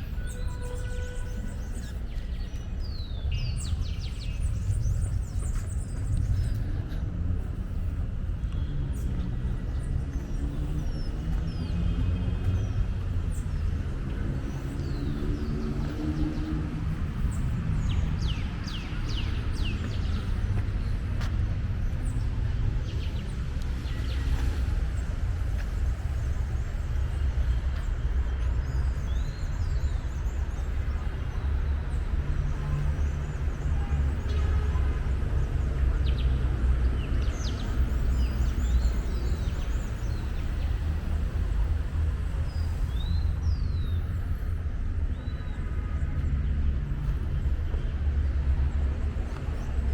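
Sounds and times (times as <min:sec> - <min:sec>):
birds chirping: 0:00.0 - 0:34.3
low rumble of street traffic: 0:00.0 - 0:49.9.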